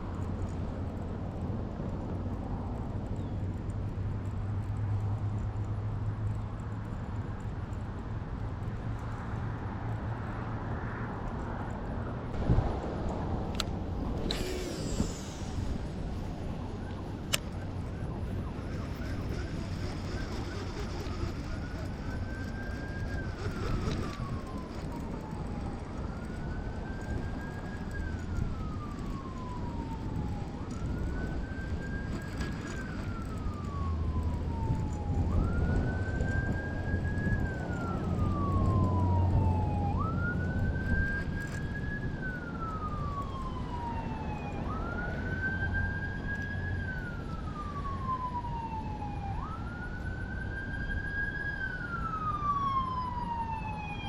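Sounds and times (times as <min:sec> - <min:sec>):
siren wailing: 0:14.0 - 0:54.0.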